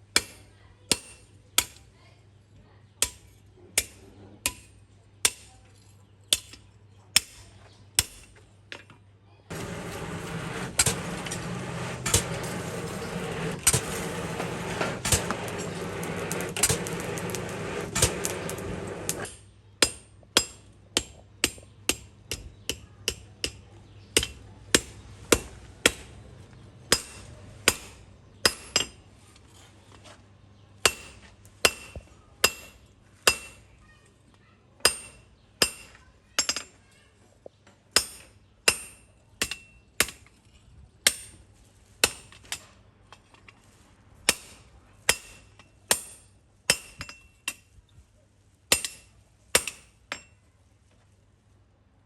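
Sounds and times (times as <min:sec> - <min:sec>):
hammer ringing on metal: 0:09.5 - 0:19.2
steady machine running: 0:09.5 - 0:19.3.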